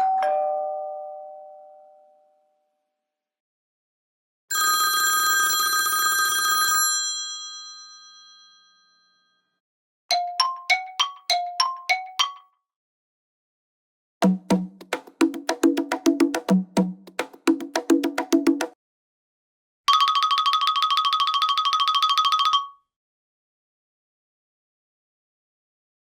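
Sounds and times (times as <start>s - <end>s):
telephone bell ringtone: 4.5s - 9.6s, 19.9s - 22.9s.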